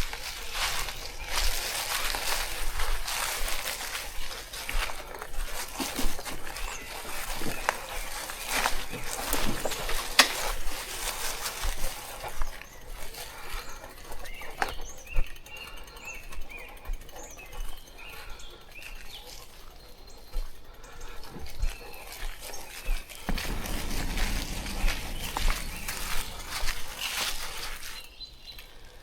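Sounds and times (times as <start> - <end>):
rustling: 23.3 - 27.9.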